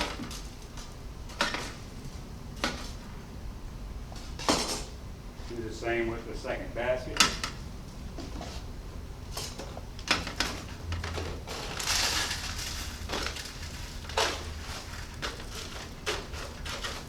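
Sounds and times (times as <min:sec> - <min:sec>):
gritty aggregate scraping and crunching: 0:10.6 - 0:17.0.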